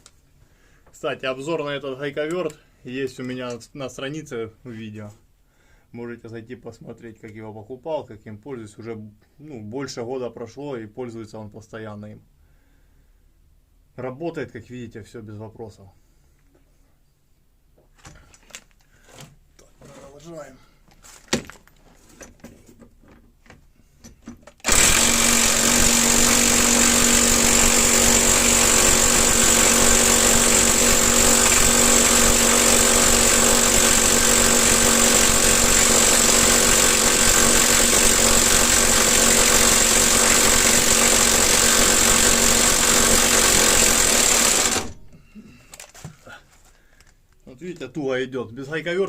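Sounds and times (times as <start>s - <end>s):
impact wrench hammering: 24.6s - 45.2s.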